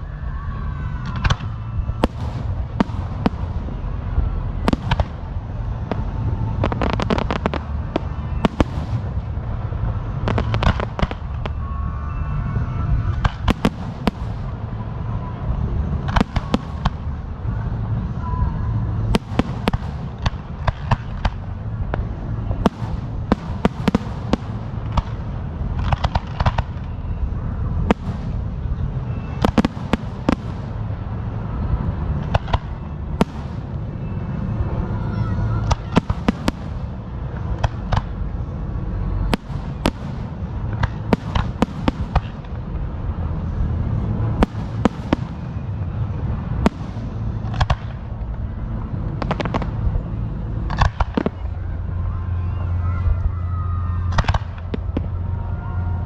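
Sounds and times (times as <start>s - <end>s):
steady low rumble: 0.0s - 56.0s
fireworks bangs and pops: 1.0s - 3.9s, 4.6s - 11.6s, 13.1s - 14.8s, 15.9s - 17.7s, 19.0s - 27.1s, 27.8s - 34.6s, 35.5s - 38.3s, 39.2s - 42.9s, 43.8s - 51.5s, 54.0s - 55.2s.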